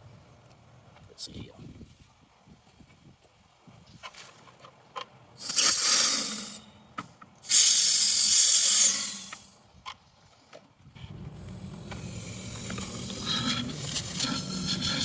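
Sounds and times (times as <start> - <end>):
compressed gas hissing: 5.4 - 6.7, 7.4 - 9.6, 11.4 - 15.0.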